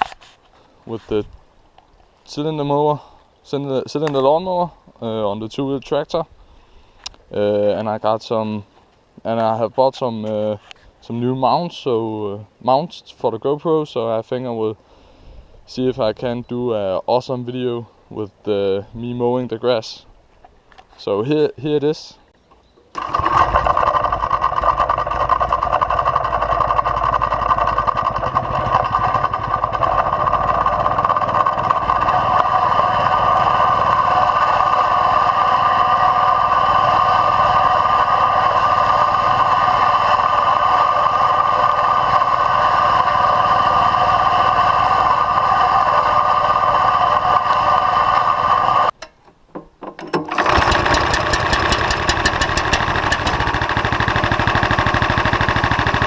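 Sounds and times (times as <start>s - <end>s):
tractor engine running steadily: 23.0s - 56.0s.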